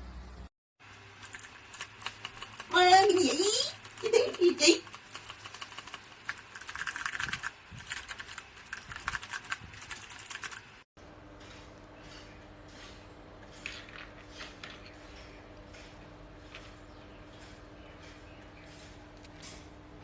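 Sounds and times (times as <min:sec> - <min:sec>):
mechanical keyboard typing: 0:01.2 - 0:10.7.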